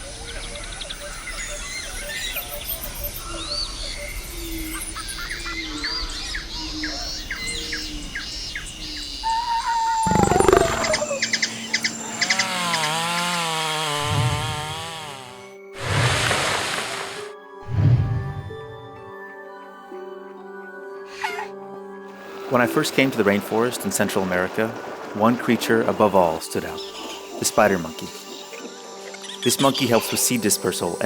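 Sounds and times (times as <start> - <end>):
birds chirping and whistling: 7.4 - 12.9
wavering call: 9.2 - 12.5
gliding falling call: 9.3 - 11.5.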